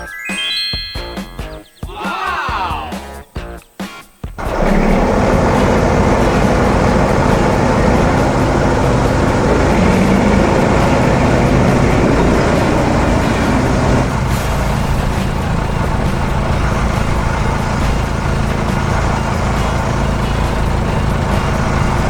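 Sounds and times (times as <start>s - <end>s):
heavy vehicle engine rumbling: 4.4s - 22.0s.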